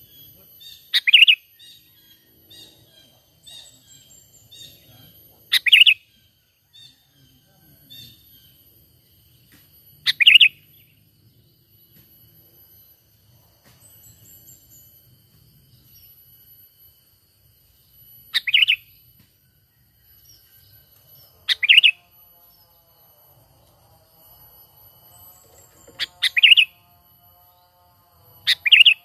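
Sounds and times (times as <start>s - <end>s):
faint bird chirps: 0.0s - 23.0s, 24.2s - 26.9s, 28.4s - 29.0s
bulbul calling: 0.1s - 6.2s, 10.0s - 10.9s, 18.3s - 19.0s, 21.4s - 22.1s, 25.6s - 26.8s, 28.5s - 29.0s.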